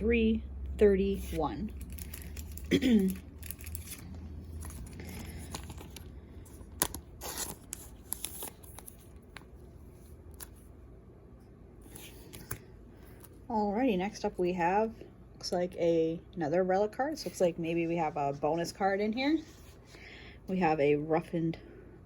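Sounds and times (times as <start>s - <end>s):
cards and packaging rustling: 1.3s - 10.7s, 11.8s - 13.4s.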